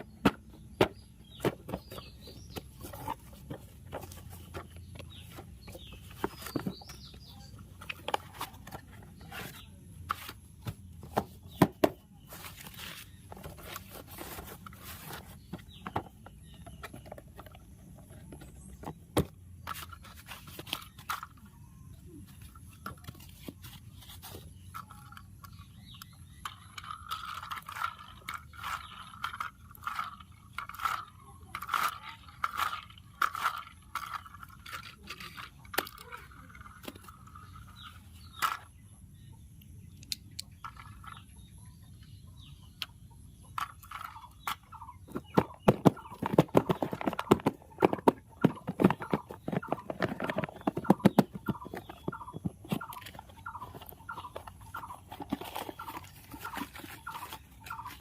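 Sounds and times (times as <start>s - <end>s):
plastic toy clicking and tapping: 24.7s - 37.2s.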